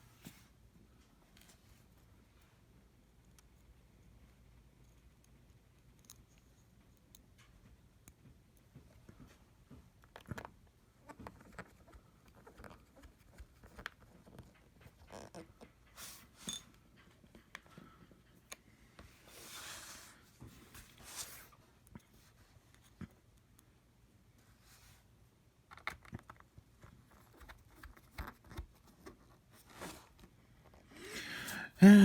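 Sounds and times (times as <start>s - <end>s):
small clicks and taps of handwork: 4.8s - 15.8s.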